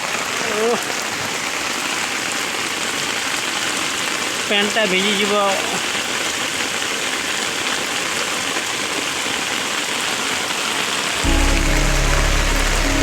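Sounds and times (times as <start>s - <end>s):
heavy rain pouring: 0.0s - 13.0s
background music: 11.2s - 13.0s.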